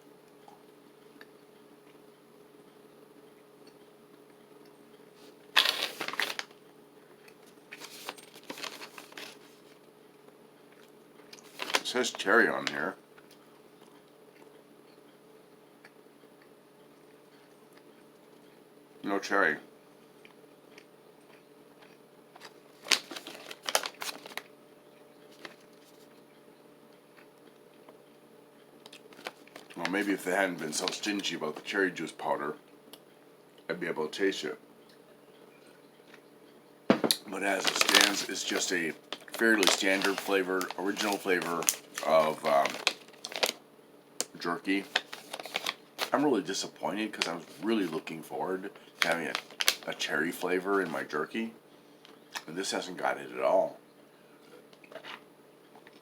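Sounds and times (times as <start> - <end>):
faint steady hum: 0.0 - 56.0
plastic snack pouch crinkling: 5.5 - 6.6, 7.7 - 9.6, 11.4 - 12.7, 22.4 - 24.5, 28.9 - 31.7, 37.3 - 43.6, 44.2 - 51.1.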